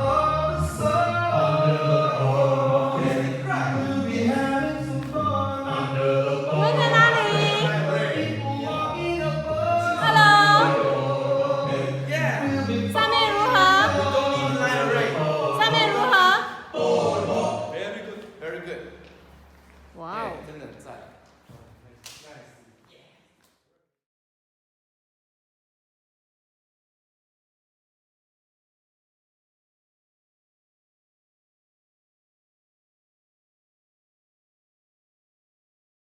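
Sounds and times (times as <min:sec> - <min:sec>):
a cappella group singing in harmony: 0:00.0 - 0:18.2.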